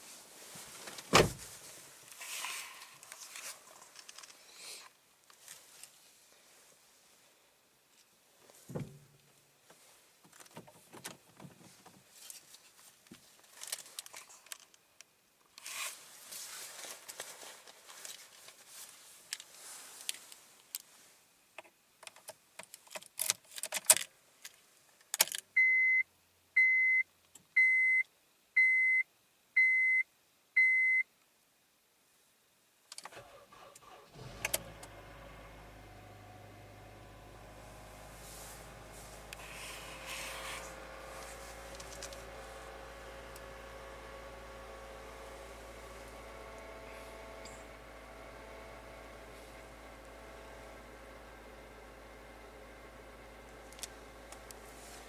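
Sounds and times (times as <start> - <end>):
car engine starting and idling: 33.0 - 55.0.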